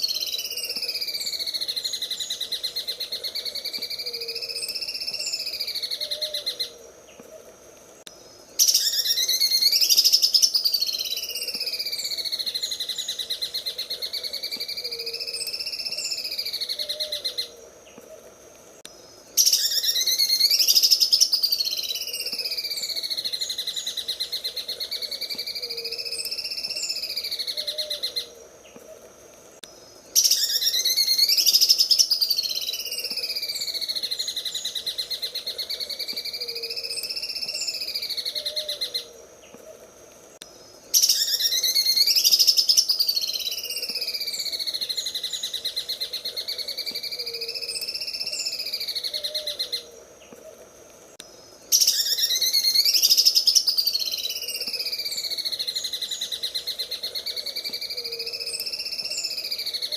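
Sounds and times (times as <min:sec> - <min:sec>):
bird rattling trill song: 0:08.6 - 0:17.5, 0:19.4 - 0:28.2, 0:30.1 - 0:39.0, 0:40.9 - 0:49.8, 0:51.7 - 0:56.8.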